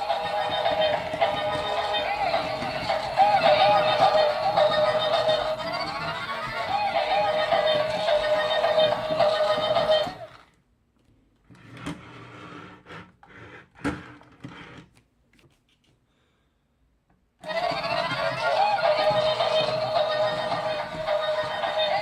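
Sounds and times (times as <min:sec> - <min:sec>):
music: 0:00.0 - 0:10.3, 0:18.3 - 0:22.0
toy motor whirring: 0:00.0 - 0:10.5, 0:17.4 - 0:22.0.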